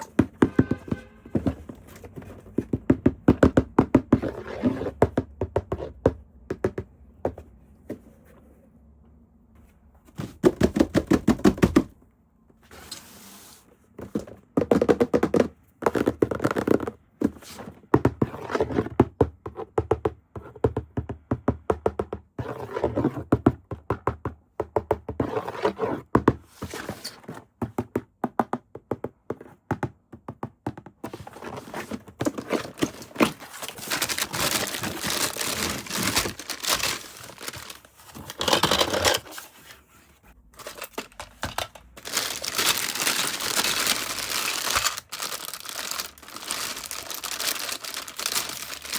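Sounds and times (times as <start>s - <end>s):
cardboard and plastic knocks: 0.0s - 4.2s, 5.0s - 8.0s, 10.2s - 11.9s
plastic wrapping crinkling: 32.2s - 39.3s, 40.6s - 48.9s.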